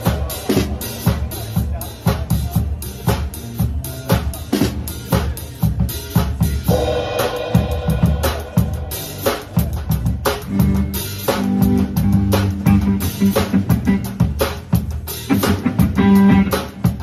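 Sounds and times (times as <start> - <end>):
drum kit beat: 0.0 - 17.0
guitar: 0.0 - 17.0.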